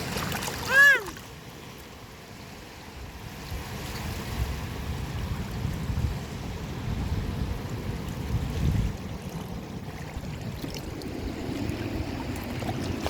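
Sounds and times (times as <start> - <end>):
sea waves washing: 0.0 - 13.0
wind rumbling on microphone: 2.8 - 13.0.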